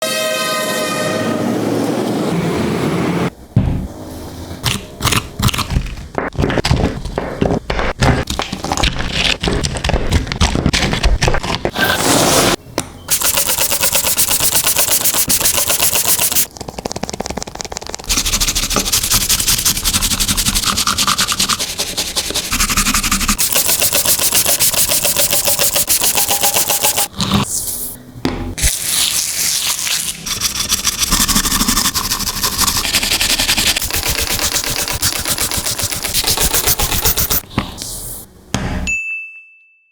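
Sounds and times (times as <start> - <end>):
pressure washer spraying metal: 13.1 - 16.5, 22.4 - 27.1.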